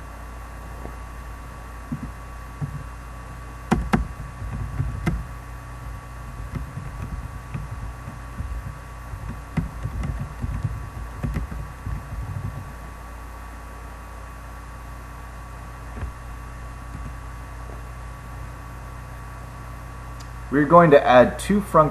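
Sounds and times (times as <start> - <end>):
electrical hum: 0.0 - 21.9
keyboard typing: 3.7 - 5.3, 6.2 - 12.8.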